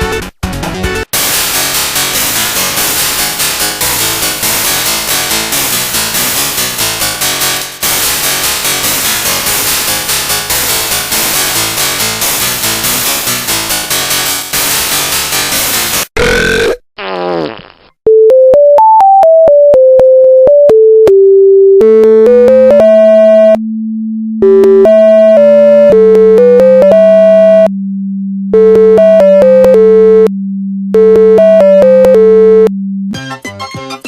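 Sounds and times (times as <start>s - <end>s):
buzzy synthesizer melody: 1.2s - 14.8s, 21.8s - 27.7s
busy electronic music: 1.2s - 15.8s, 33.1s - 34.0s
low synth drone: 22.8s - 29.2s.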